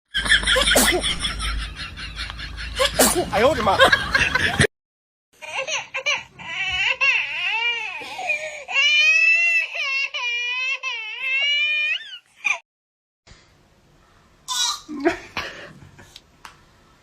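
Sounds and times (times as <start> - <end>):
baby crying: 5.4 - 12.6.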